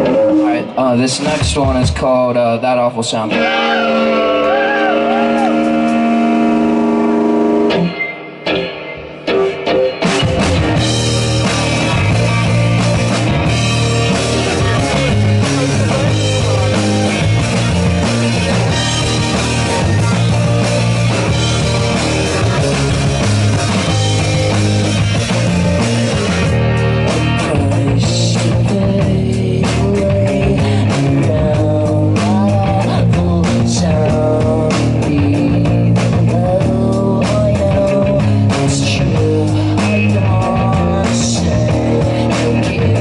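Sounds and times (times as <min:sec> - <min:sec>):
live rock band playing: 0:00.0 - 0:43.0
electric guitar chord ringing: 0:03.3 - 0:27.7.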